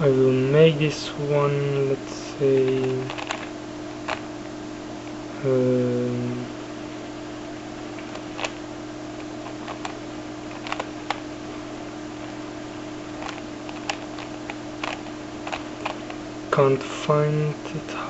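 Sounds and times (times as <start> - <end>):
low electrical hum: 0.0 - 18.0
puzzle cube layers clicking: 2.6 - 3.5, 9.6 - 11.2, 13.2 - 16.1.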